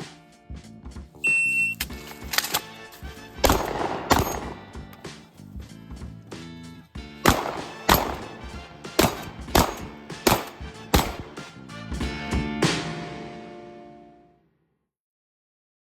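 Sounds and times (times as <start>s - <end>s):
background music: 0.0s - 14.4s
shotgun shots: 3.4s - 5.0s, 7.2s - 11.6s.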